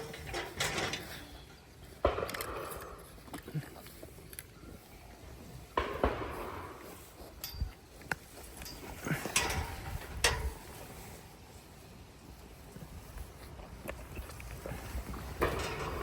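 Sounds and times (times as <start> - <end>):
sharp knocks and clatters: 2.0 - 3.5, 5.7 - 10.7, 15.1 - 16.0.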